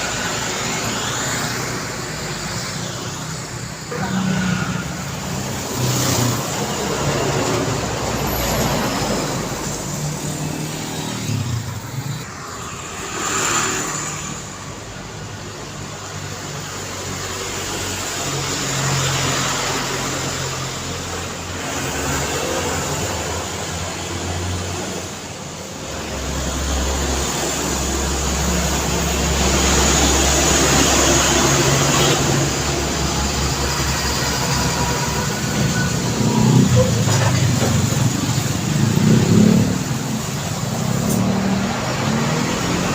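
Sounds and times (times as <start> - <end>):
road traffic passing: 0.0 - 42.9
heavy truck engine rumble: 22.4 - 42.9.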